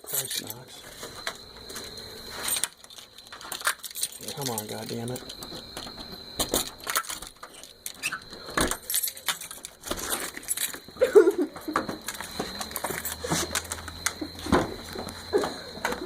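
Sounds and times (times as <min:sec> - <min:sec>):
keys jangling in a door lock: 0:00.0 - 0:00.7, 0:02.4 - 0:11.0, 0:12.0 - 0:14.2.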